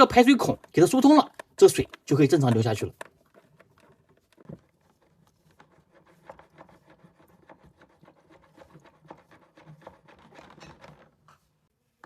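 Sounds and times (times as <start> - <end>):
wire scratching in plastic tube: 0.0 - 11.6.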